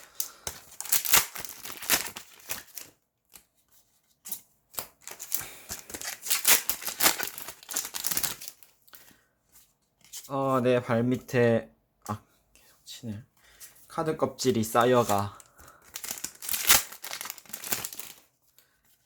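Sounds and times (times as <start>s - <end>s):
foil wrappers tearing and crinkling: 0.0s - 2.9s, 5.0s - 8.7s, 15.8s - 18.3s.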